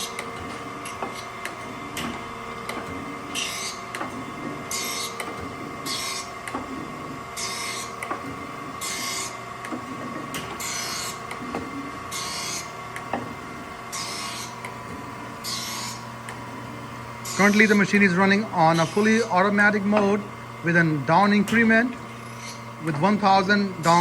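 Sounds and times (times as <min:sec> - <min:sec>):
grinder spindle hum: 0:00.0 - 0:24.0.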